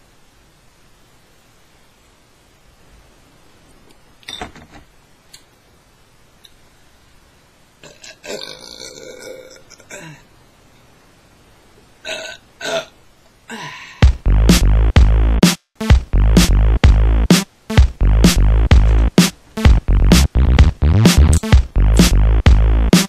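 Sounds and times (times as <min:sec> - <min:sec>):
woman burping: 0:07.8 - 0:10.3, 0:12.0 - 0:13.9.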